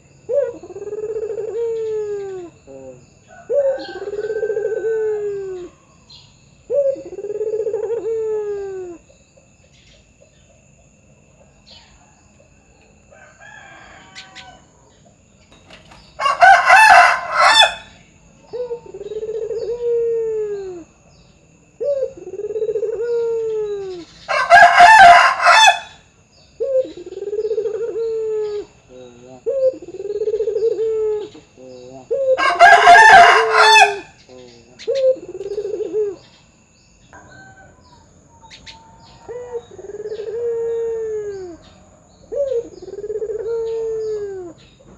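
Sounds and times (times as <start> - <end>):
dove cooing: 0.0 - 9.2, 15.5 - 21.1, 21.8 - 36.4, 37.2 - 44.9
loud harsh bird call: 15.6 - 18.1, 31.2 - 35.2.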